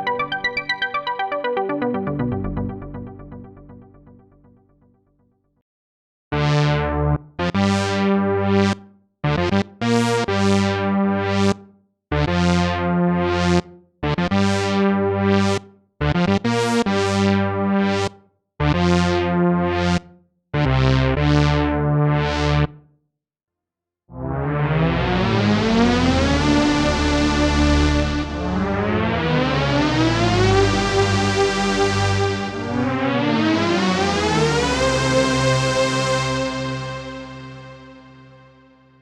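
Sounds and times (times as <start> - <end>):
synthesizer chords: 0.0 - 4.6, 24.1 - 38.4
sustained synthesizer sound: 24.2 - 34.4.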